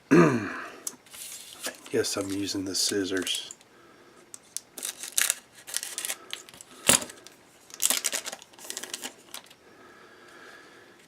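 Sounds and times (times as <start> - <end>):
scissors snipping foil pack: 4.5 - 9.5.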